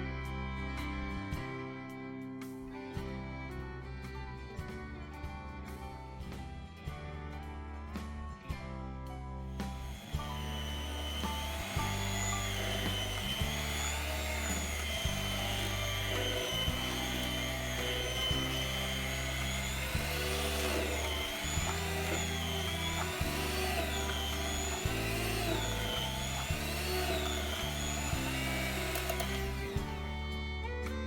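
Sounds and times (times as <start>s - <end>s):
electric hand mixer whining: 9.5s - 31.0s.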